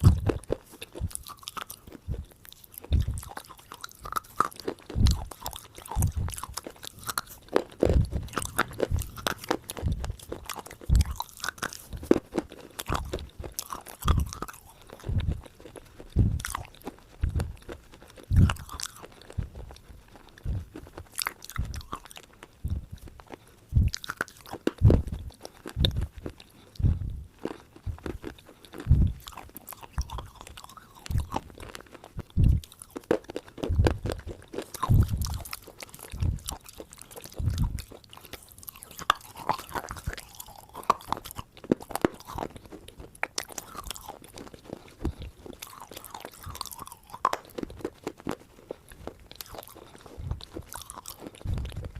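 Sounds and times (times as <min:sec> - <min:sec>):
crunchy food being chewed: 0:00.0 - 0:51.9.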